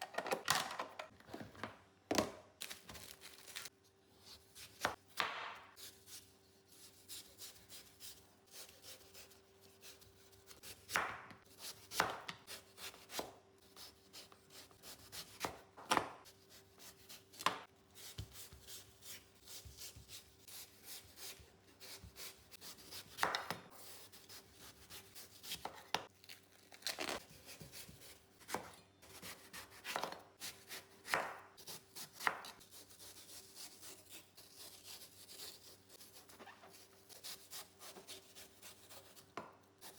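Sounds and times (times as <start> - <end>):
knife cutting fruit on board: 9.9 - 26.1, 27.0 - 35.5.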